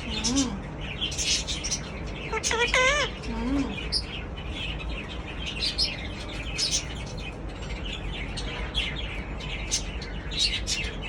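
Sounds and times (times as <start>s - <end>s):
parrot chirping: 0.0s - 8.0s.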